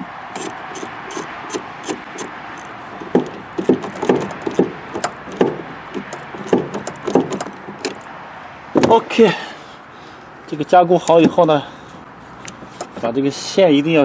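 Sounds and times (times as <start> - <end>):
hand tool clicking: 0.3 - 8.1
knocks and clatters: 0.4 - 8.1, 8.7 - 9.0.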